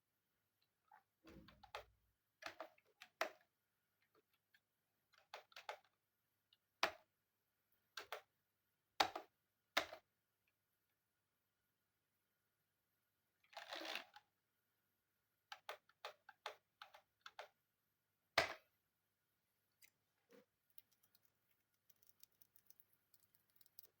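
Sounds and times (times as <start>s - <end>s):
small ticks: 20.7s - 24.0s.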